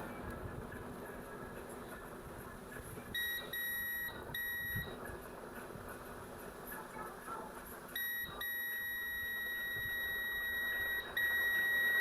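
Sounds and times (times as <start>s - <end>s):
multimeter high beep: 3.2s - 5.0s, 8.0s - 12.0s.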